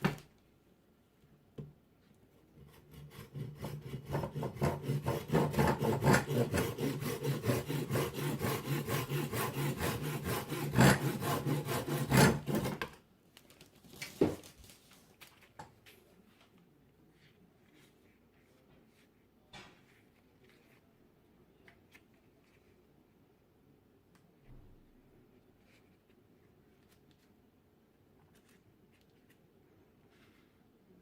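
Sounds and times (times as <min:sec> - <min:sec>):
hand saw cutting wood: 0:02.6 - 0:12.9.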